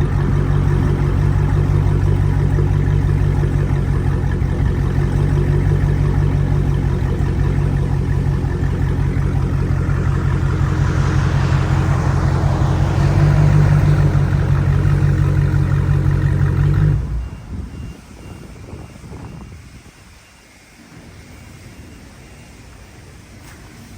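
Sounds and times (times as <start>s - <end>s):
car engine idling: 0.0s - 19.8s.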